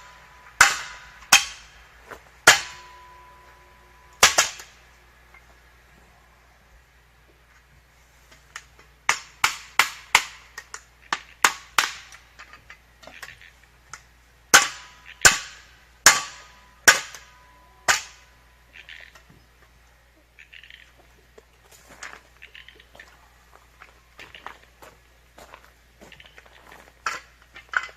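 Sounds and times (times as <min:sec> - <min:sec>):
metallic ring: 0:02.6 - 0:04.2.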